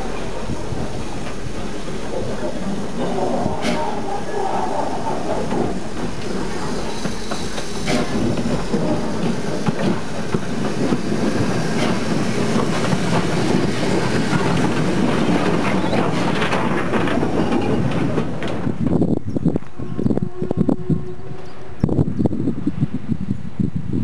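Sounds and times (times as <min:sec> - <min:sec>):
wheels clicking on rails: 0:00.0 - 0:19.2
train rumble: 0:00.0 - 0:23.9.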